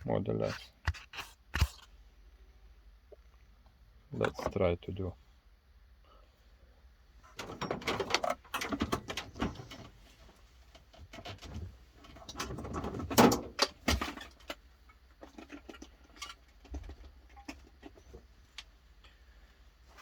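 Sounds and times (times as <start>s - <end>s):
tools rustling and clattering: 7.3s - 18.5s.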